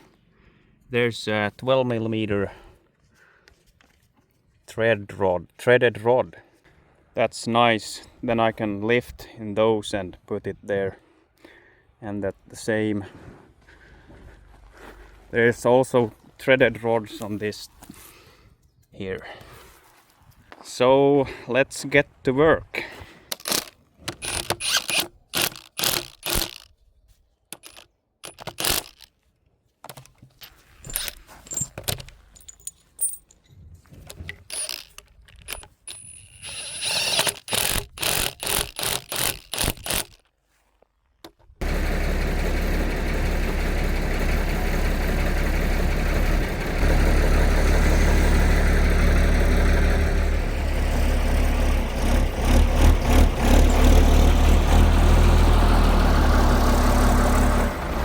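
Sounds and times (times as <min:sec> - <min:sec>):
metal tools clinking and scraping: 0:30.0 - 0:37.5
tractor engine running: 0:41.6 - 0:58.0.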